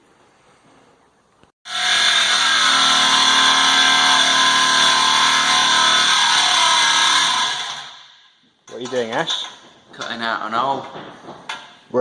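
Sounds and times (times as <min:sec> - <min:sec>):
angle grinder cutting steel: 0:01.7 - 0:08.1.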